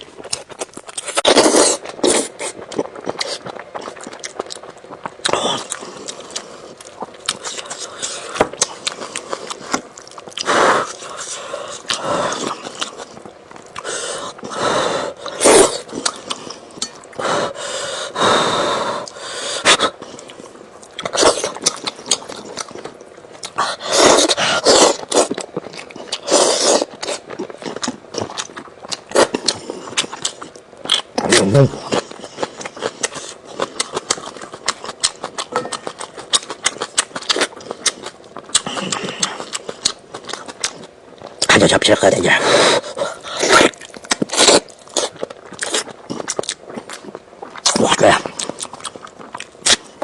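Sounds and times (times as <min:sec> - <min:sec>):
wet chewing and lip-smacking: 0:19.0 - 0:41.5, 0:42.8 - 0:50.0.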